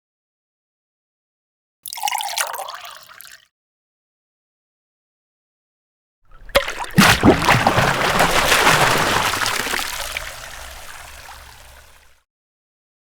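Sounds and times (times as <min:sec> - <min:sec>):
water splashing and gurgling: 0:06.3 - 0:12.2.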